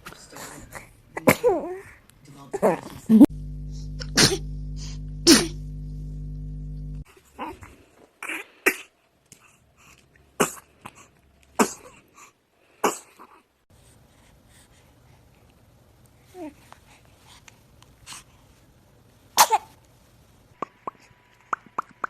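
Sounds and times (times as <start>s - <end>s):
baby sneezing: 1.2s - 1.8s, 4.0s - 4.5s, 5.2s - 5.6s, 8.2s - 8.9s, 10.4s - 10.7s, 11.6s - 12.0s, 19.4s - 19.8s
steady electrical hum: 3.2s - 7.0s.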